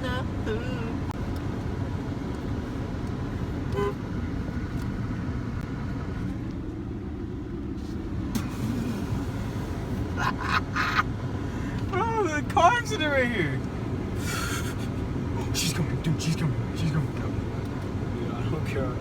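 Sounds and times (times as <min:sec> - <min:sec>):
car engine and road rumble: 0:00.0 - 0:19.0
car horn toots: 0:03.7 - 0:04.0.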